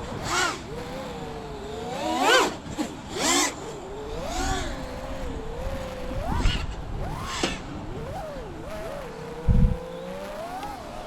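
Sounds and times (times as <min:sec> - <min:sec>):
drone motors whining: 0:00.0 - 0:11.0.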